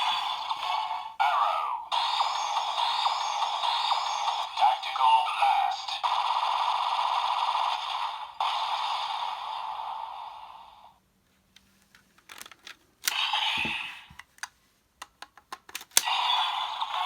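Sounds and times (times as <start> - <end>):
toy electronic sound effects: 0.0 - 7.0
plastic toy clicks: 12.2 - 13.5, 14.1 - 16.2.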